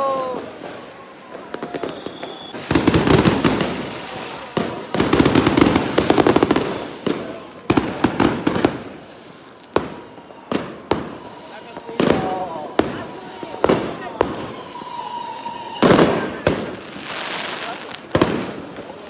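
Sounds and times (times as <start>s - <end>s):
fireworks crackling pops: 0.0s - 19.0s
firework bang: 1.5s - 9.1s, 9.7s - 19.0s.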